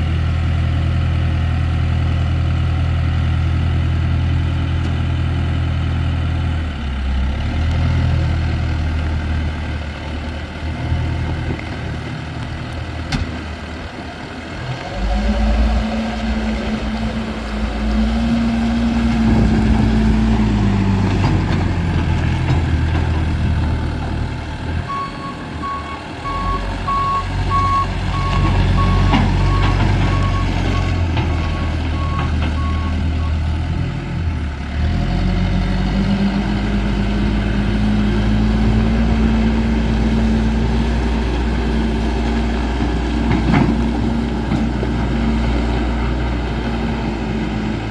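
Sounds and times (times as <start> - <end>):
diesel engine running: 0.0 - 47.9
backup alarm beeping: 24.9 - 33.3.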